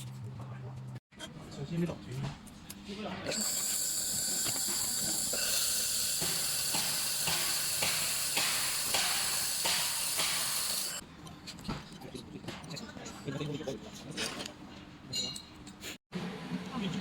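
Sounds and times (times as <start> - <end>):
laser cutting hiss: 3.3 - 11.0.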